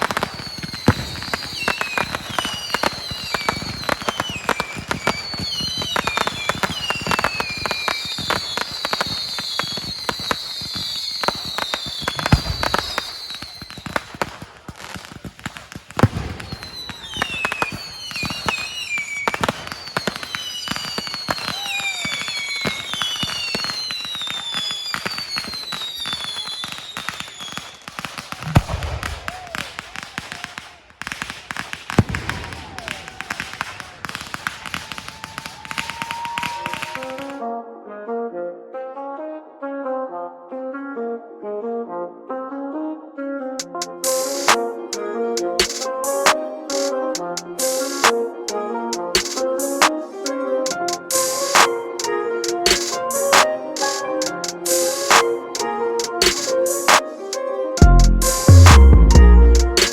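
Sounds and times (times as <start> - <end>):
deep firework booms: 0.0 - 18.6, 28.3 - 36.9
falling firework whistles: 0.0 - 37.4, 43.6 - 59.9
fireworks crackling: 0.0 - 37.4, 43.6 - 59.9.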